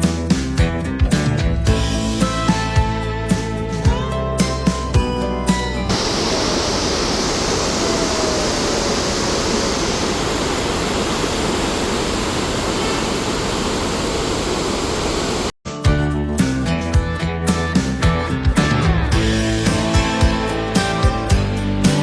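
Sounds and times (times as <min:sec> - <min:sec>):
waterfall rushing: 0:05.9 - 0:15.5.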